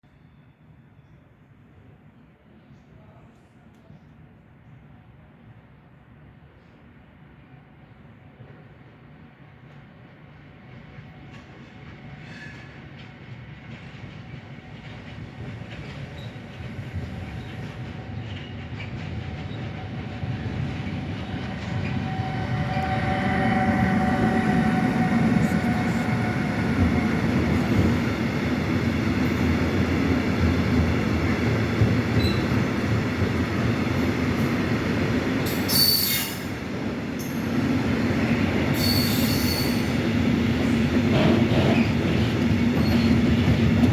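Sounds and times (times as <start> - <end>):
freight train passing: 4.2 - 43.9
high-pitched wheel squeals: 35.7 - 36.5, 38.8 - 39.9.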